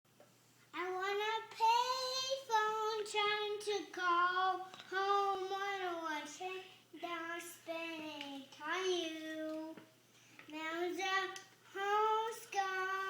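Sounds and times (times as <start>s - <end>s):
boy singing: 0.8s - 9.8s, 10.5s - 13.0s.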